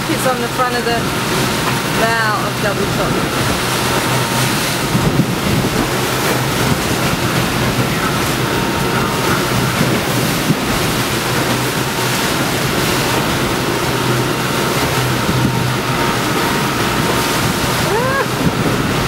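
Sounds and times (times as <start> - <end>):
rough sea and breaking waves: 0.0 - 19.0
wind buffeting microphone: 0.0 - 19.0.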